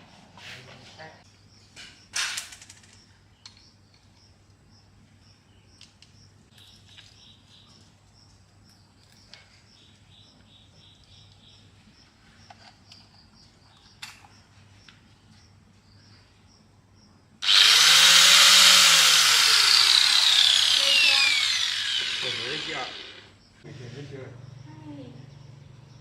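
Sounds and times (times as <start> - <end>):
small bird chirping: 2.9 - 17.1.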